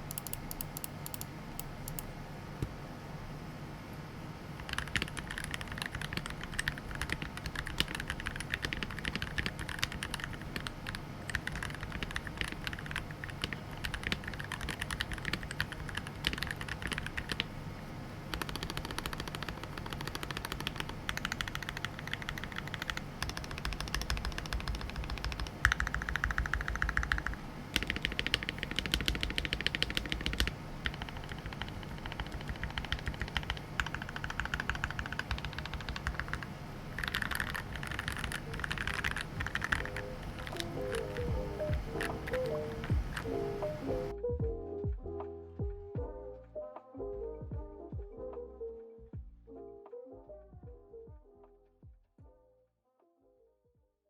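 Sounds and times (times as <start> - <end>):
fast typing on mechanical keyboard: 0.0 - 1.3, 4.6 - 17.5, 18.3 - 41.4.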